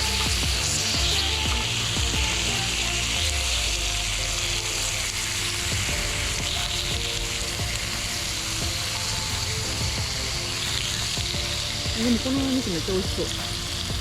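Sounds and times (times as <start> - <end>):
meat sizzling: 0.0 - 14.0.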